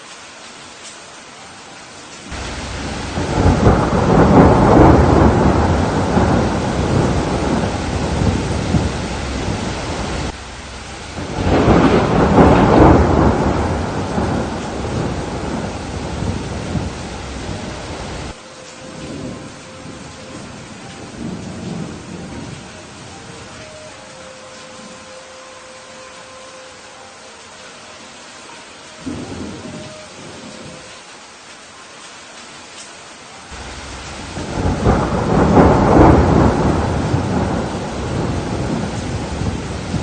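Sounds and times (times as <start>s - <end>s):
rain falling: 0.0s - 40.0s
rolling thunder: 2.3s - 23.5s, 29.1s - 30.9s, 33.5s - 40.0s.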